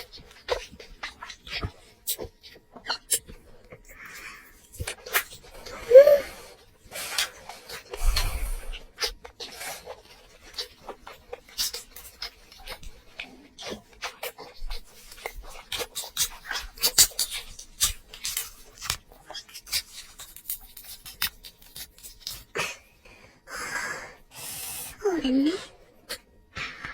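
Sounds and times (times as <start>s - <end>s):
person chewing with wet smacks: 0.0s - 5.8s, 8.7s - 23.0s, 26.0s - 26.9s.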